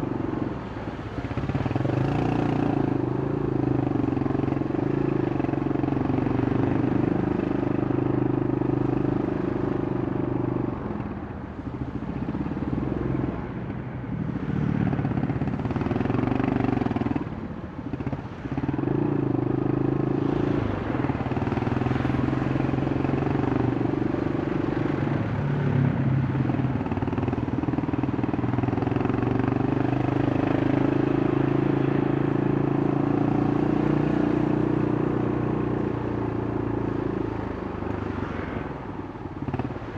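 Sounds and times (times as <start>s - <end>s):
motorcycle engine running: 13.8s - 38.4s.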